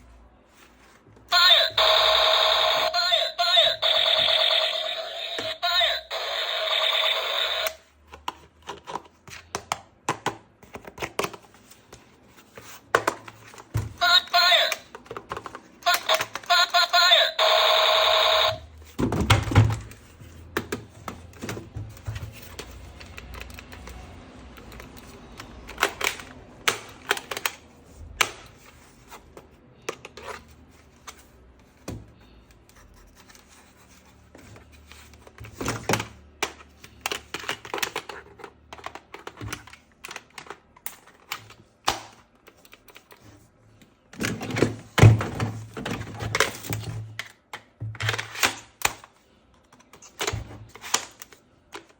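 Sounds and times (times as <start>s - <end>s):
plastic toy parts clicking: 13.0s - 16.9s.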